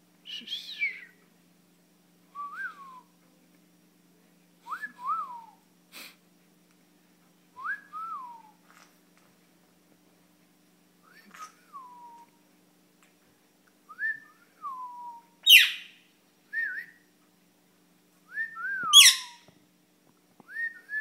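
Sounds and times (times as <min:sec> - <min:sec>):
short whistled phrases: 0:00.2 - 0:01.2.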